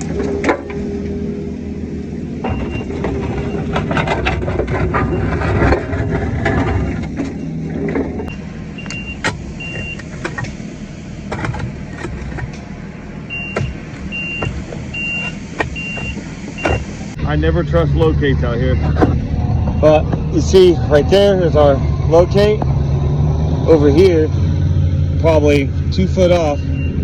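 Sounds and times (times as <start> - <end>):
bucket clanking and scraping: 0.0 - 0.8, 2.4 - 8.3, 11.3 - 12.7
excavator diesel engine: 0.0 - 27.0.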